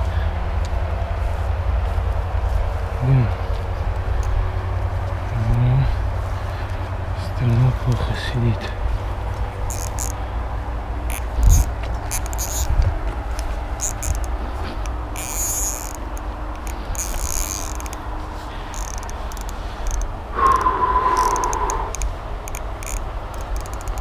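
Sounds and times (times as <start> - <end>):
insects chirping: 19.8 - 23.0
steady low rumble: 20.2 - 23.0
brief falling whine: 20.4 - 22.1.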